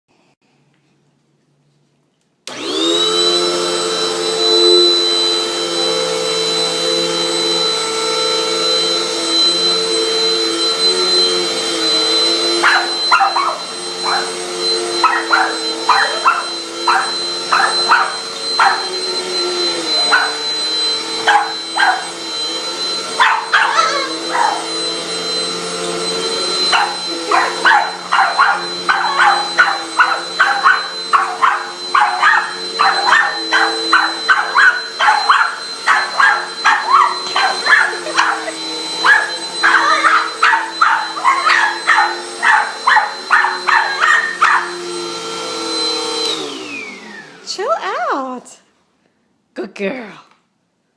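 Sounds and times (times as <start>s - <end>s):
vacuum cleaner running: 2.5s - 48.8s
dog barking: 12.6s - 14.4s, 15.0s - 19.0s, 20.0s - 20.4s, 21.2s - 22.1s, 23.2s - 24.7s, 26.7s - 44.8s.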